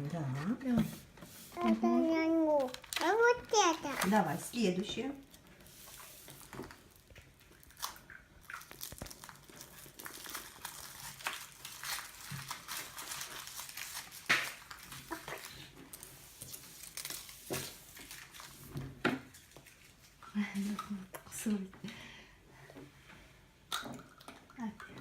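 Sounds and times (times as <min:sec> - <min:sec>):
foil wrapper crinkling: 0:01.8 - 0:04.5, 0:05.4 - 0:18.7, 0:19.3 - 0:20.2.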